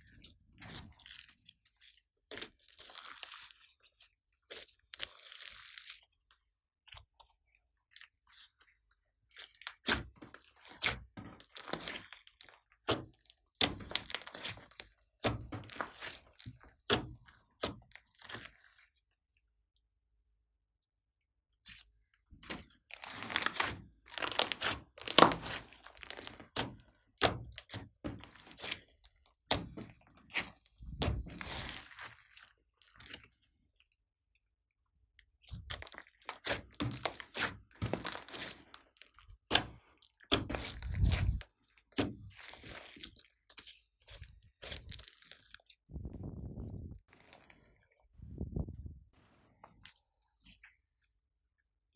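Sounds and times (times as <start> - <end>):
slime squelching and clicking: 9.4 - 18.7, 22.4 - 33.4, 35.2 - 45.8.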